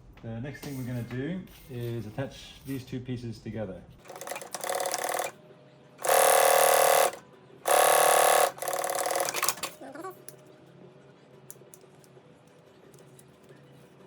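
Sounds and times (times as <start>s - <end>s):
sewing machine stitching: 4.0s - 5.3s, 6.0s - 9.8s.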